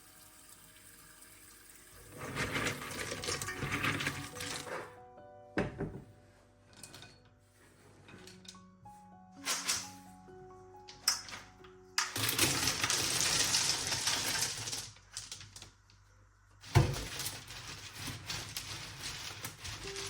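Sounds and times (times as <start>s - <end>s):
nuts clattering together: 10.9s - 15.8s.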